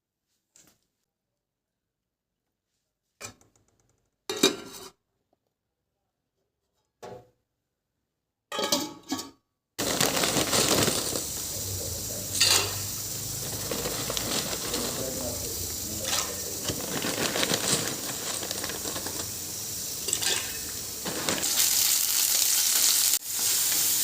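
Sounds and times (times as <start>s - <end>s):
utensils and pots clattering: 8.5s - 22.4s
steady hiss: 9.8s - 24.0s.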